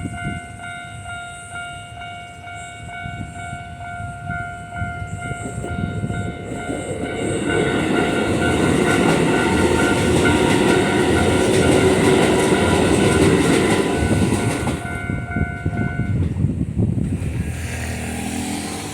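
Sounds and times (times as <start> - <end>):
level crossing alarm bell: 0.0 - 16.2
train wheels clacking over rail joints: 5.4 - 16.4.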